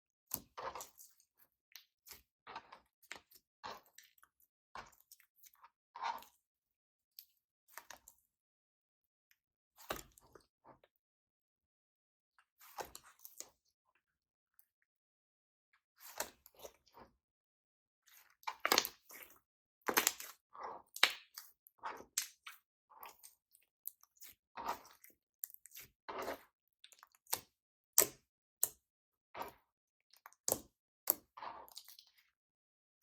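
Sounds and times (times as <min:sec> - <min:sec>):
sticky slime squelches and pops: 0:19.9 - 0:20.4.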